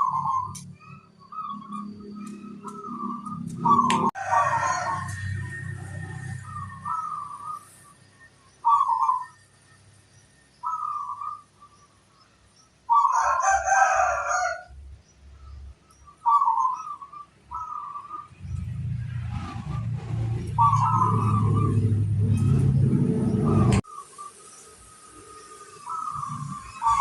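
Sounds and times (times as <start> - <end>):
doves cooing: 0.0 - 7.9, 8.6 - 9.4, 12.9 - 18.4, 19.1 - 24.4, 25.0 - 27.0.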